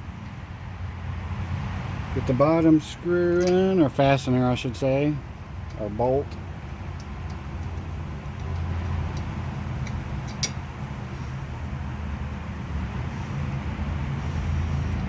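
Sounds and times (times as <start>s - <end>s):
steady low rumble: 0.0s - 15.0s
light metallic clicks: 3.3s - 3.8s, 5.6s - 10.7s.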